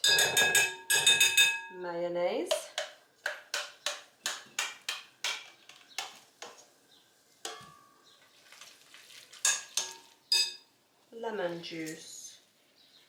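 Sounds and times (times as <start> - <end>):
spoon clinking against a dish: 0.0 - 1.7, 9.4 - 10.6.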